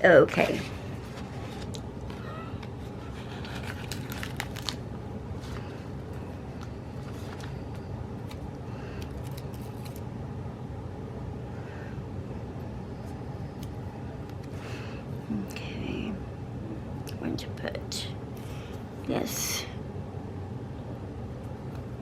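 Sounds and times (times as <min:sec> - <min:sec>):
steady low hum: 0:00.0 - 0:22.0
paper rustling: 0:00.4 - 0:10.0.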